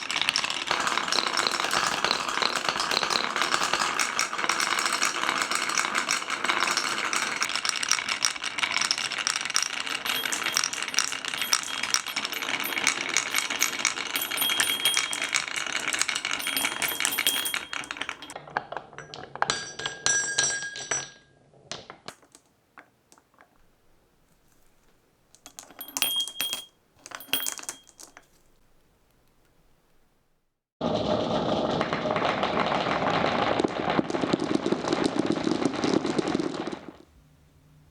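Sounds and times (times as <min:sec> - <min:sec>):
marbles rattling down wooden tracks: 0:00.0 - 0:18.4, 0:24.3 - 0:28.5
ringing clinks of marbles: 0:08.8 - 0:18.4, 0:25.4 - 0:28.5.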